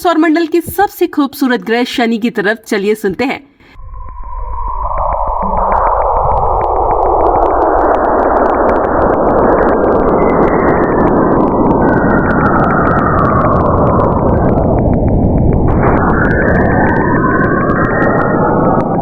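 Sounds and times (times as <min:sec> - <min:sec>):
rushing hiss with crackles: 0:04.0 - 0:19.0.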